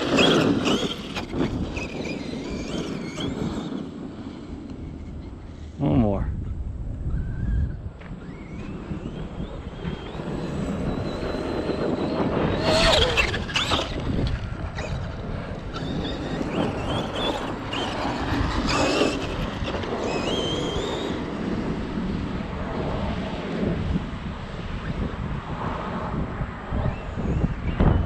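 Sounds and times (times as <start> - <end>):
electric motor whining: 0.0 - 3.9, 7.1 - 21.6
tyres spinning on dirt: 0.0 - 4.2, 8.1 - 21.5.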